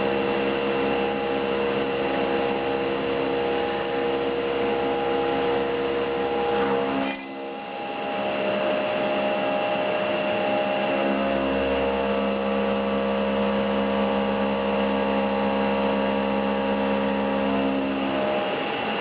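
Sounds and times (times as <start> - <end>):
cnc machine hum and whine: 0.0 - 19.0.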